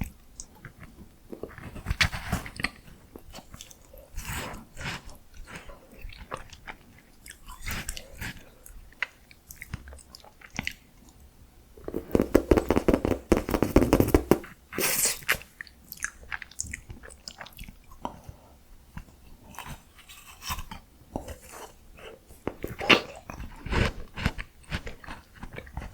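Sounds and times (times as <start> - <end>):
rapid crunching: 11.8 - 14.5.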